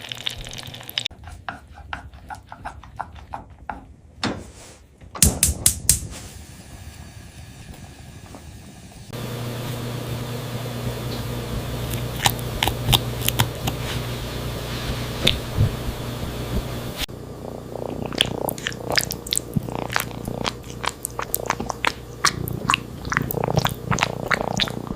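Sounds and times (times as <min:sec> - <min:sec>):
steady low hum: 0:05.0 - 0:24.9
cat chewing food: 0:11.9 - 0:13.8, 0:17.8 - 0:24.9.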